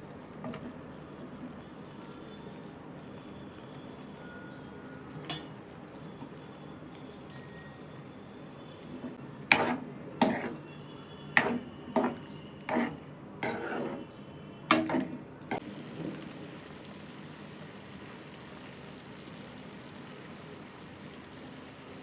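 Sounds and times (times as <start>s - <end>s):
cookware clanking: 5.2s - 5.6s.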